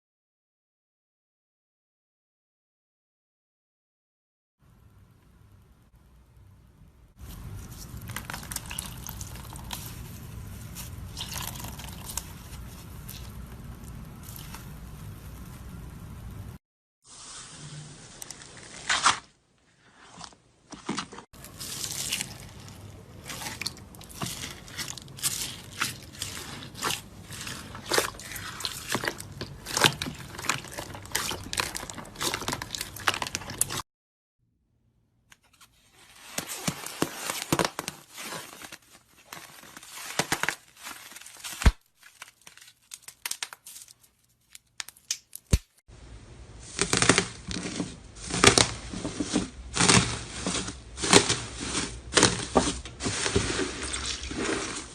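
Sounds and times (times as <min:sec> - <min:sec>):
hands squishing slime: 0:07.2 - 0:16.5, 0:20.8 - 0:33.8.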